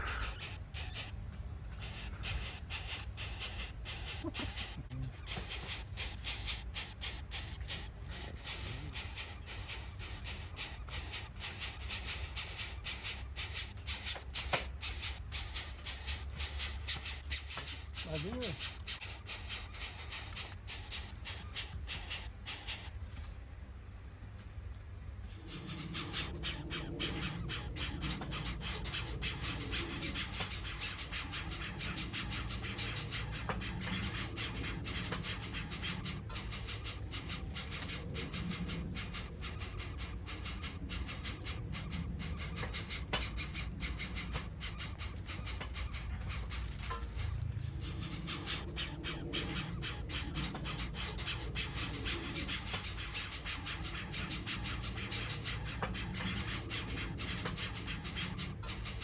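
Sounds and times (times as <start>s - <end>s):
shaker percussion beat: 1.8s - 22.9s, 25.3s - 59.0s.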